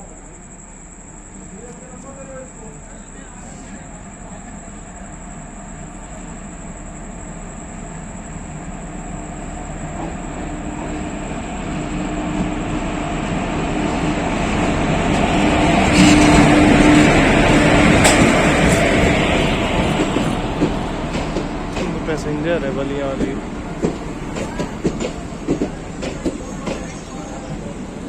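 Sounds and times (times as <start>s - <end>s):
passenger train rumbling: 0.0s - 28.0s.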